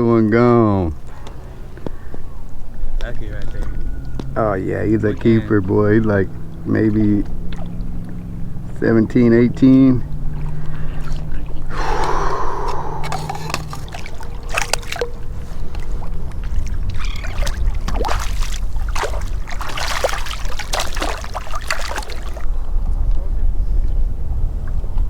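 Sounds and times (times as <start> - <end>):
wind rumble on microphone: 9.7 - 20.6, 22.4 - 25.0
water splashing: 10.1 - 22.5.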